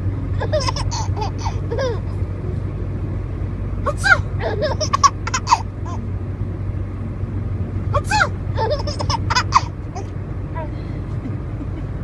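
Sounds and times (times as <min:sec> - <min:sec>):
steady low hum: 0:00.0 - 0:12.0
baby laughing: 0:00.4 - 0:02.2, 0:03.9 - 0:06.0, 0:08.0 - 0:10.1
baby sneezing: 0:03.9 - 0:04.2.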